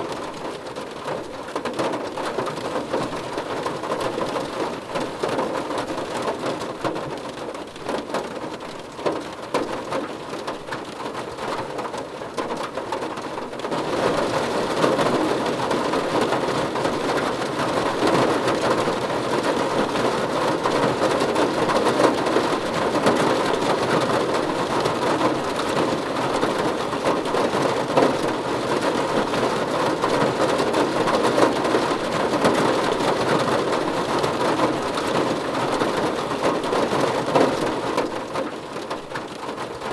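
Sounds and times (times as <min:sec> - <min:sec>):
rain falling on a surface: 0:00.0 - 0:39.9.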